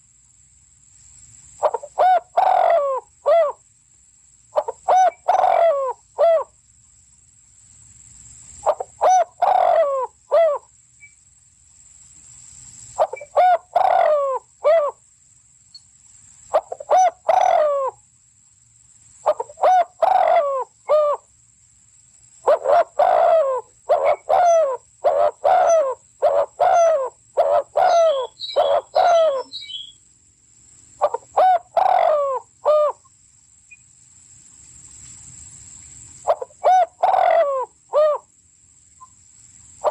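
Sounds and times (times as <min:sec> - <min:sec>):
bird calling in falling notes: 0:22.5 - 0:30.0.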